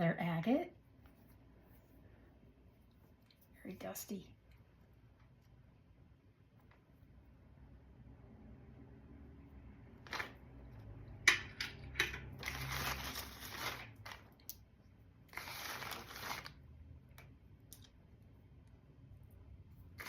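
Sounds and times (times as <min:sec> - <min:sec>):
wrapping rustling and crinkling: 0:10.0 - 0:10.6, 0:12.1 - 0:18.0.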